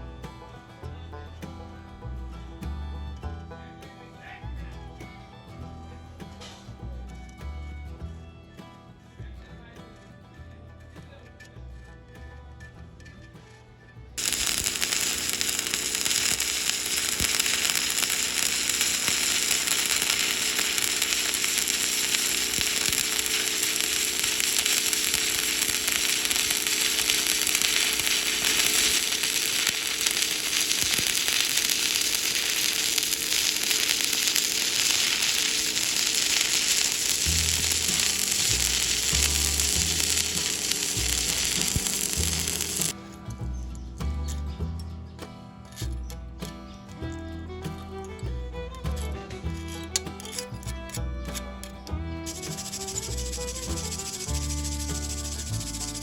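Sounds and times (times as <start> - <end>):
faint background music: 0.0 - 56.0
welding arc hissing: 14.2 - 43.0, 52.2 - 56.0.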